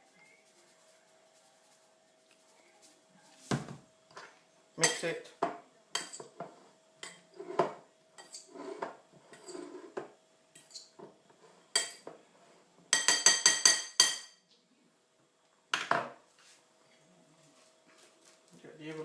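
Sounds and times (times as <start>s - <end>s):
metal utensil scraping a dish: 6.0s - 13.8s
ringing taps on metal: 13.0s - 14.4s.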